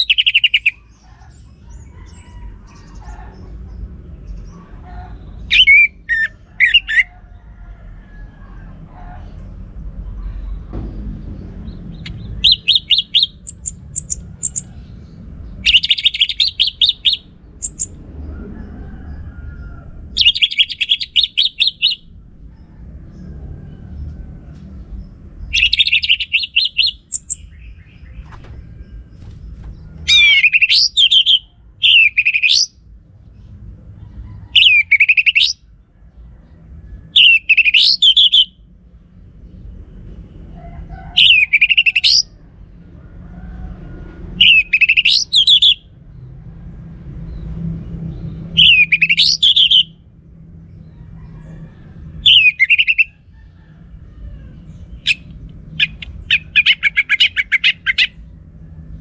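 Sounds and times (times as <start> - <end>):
steady low rumble: 0.0 - 59.0
thrush singing: 12.0 - 14.9, 15.5 - 18.0, 20.0 - 22.1, 25.5 - 32.7, 44.4 - 45.8, 55.0 - 58.2.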